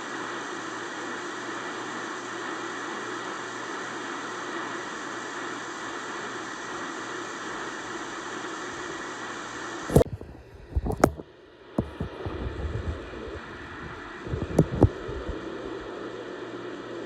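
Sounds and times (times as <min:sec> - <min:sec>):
radio static hiss: 0:09.9 - 0:11.2, 0:11.8 - 0:16.0
sharp clicks and low knocks: 0:09.9 - 0:11.2, 0:11.8 - 0:15.4.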